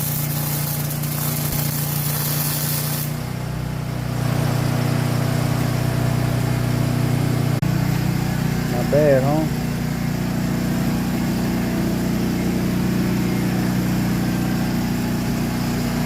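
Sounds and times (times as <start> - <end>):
hissing spray: 0.0 - 3.3
engine humming: 0.0 - 16.0.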